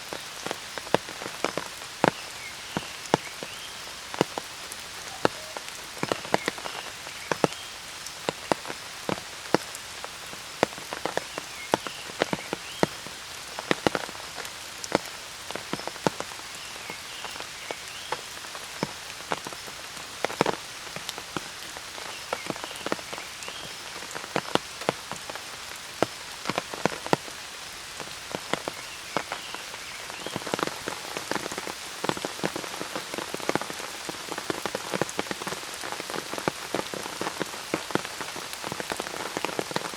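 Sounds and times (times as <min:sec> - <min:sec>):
rain drops tapping: 0:00.0 - 0:39.9
rain hiss: 0:00.0 - 0:39.9
faint short calls: 0:04.9 - 0:05.7.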